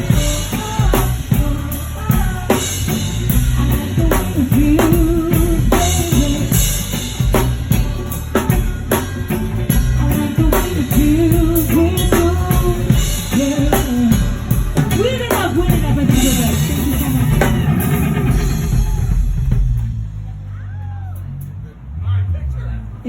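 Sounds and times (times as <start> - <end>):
person singing: 0.0 - 9.0, 9.7 - 18.8
pop song with drums and bass: 0.0 - 20.2.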